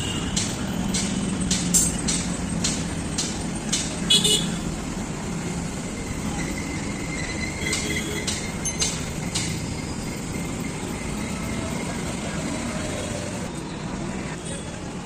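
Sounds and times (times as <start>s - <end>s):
road traffic: 0.0s - 15.0s
vehicle horn toot: 4.1s - 4.6s.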